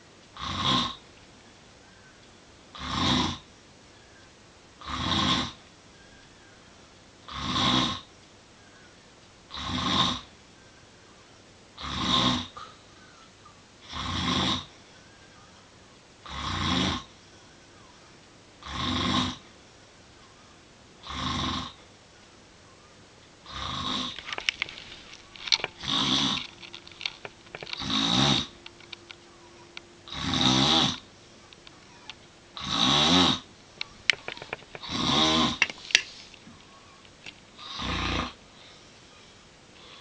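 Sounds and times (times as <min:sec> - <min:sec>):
person snoring: 0:02.8 - 0:03.4, 0:07.3 - 0:08.1, 0:09.5 - 0:10.3, 0:11.8 - 0:12.7, 0:13.8 - 0:14.7, 0:16.2 - 0:17.1, 0:18.6 - 0:19.4, 0:21.0 - 0:21.8, 0:23.5 - 0:24.2, 0:25.7 - 0:26.4, 0:27.7 - 0:28.5, 0:30.1 - 0:31.0, 0:32.6 - 0:33.4, 0:34.8 - 0:35.7, 0:37.6 - 0:38.4.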